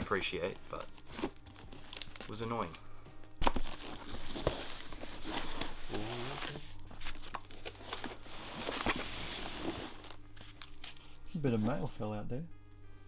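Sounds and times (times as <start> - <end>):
cardboard box crinkling and tearing: 0.0 - 2.8, 3.4 - 11.1.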